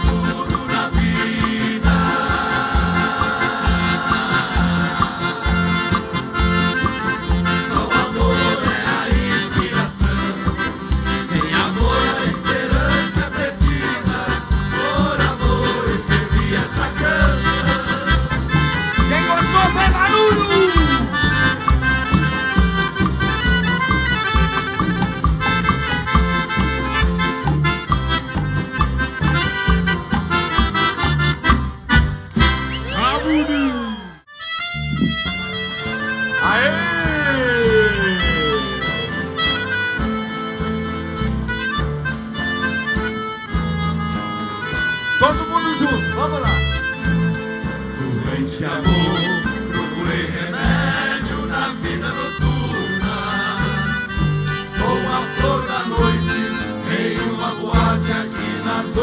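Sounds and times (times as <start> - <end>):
steady bass beat: 0.0 - 33.8
accordion: 0.0 - 59.0.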